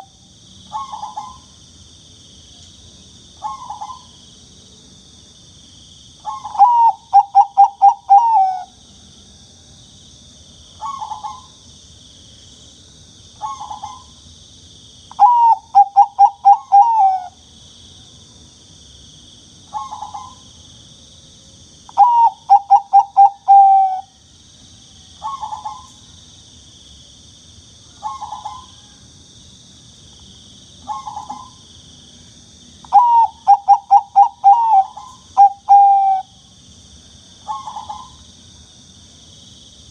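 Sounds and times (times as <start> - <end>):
dove cooing: 0.7 - 1.4, 6.2 - 8.7, 13.4 - 14.1, 15.2 - 17.4, 19.7 - 20.4, 22.0 - 24.1, 25.2 - 25.9, 28.0 - 29.0, 30.8 - 31.6, 32.9 - 36.3, 37.4 - 38.2.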